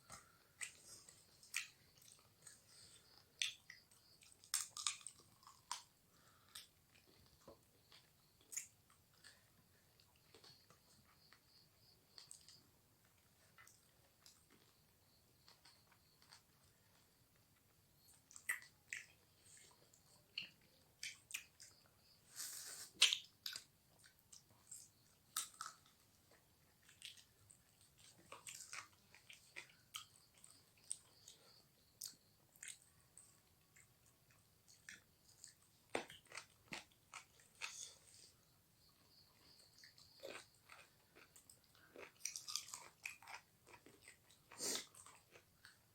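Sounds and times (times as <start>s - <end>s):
person chewing crunchy food: 0.0s - 12.6s, 15.4s - 17.1s, 18.0s - 38.4s, 39.1s - 45.9s.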